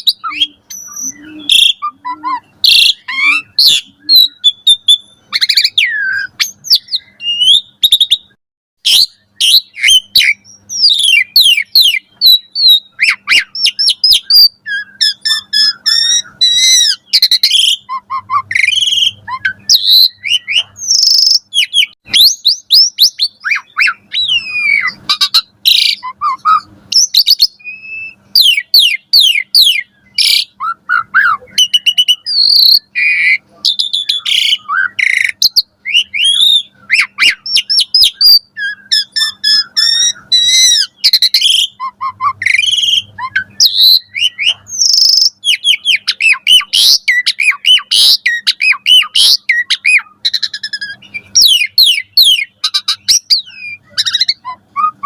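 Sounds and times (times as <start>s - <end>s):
starling singing: 0.0s - 55.0s.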